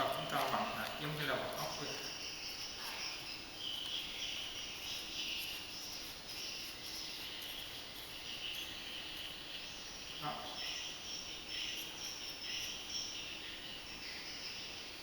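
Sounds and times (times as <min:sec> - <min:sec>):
insects chirping: 0:00.0 - 0:15.0.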